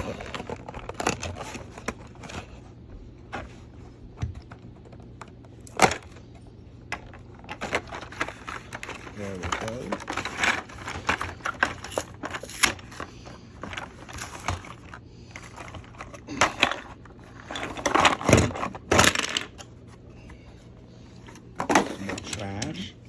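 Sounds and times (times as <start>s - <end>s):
packaging rustling and clicking: 0.0s - 3.6s, 6.9s - 19.8s
packaging crackles: 7.4s - 19.2s.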